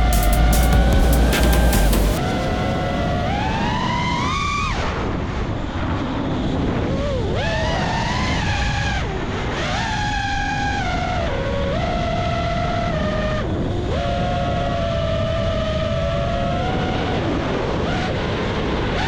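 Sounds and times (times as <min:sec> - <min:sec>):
drone motors whining: 0:00.0 - 0:03.9
loud low rumble: 0:00.0 - 0:05.1.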